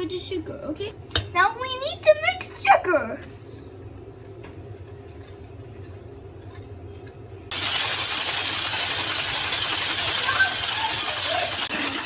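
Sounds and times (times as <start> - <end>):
electric mixer running: 7.5 - 12.0.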